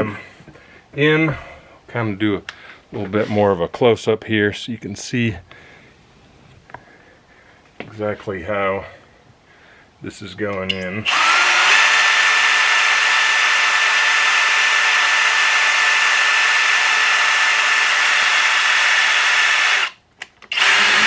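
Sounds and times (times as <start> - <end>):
power drill boring into concrete: 10.8 - 21.0.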